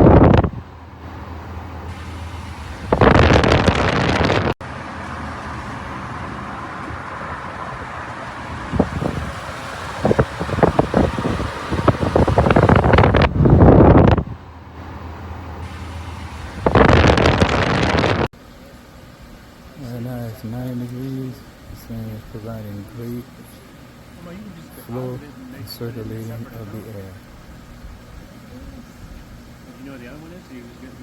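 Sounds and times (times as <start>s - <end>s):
wind buffeting microphone: 0.0s - 18.3s.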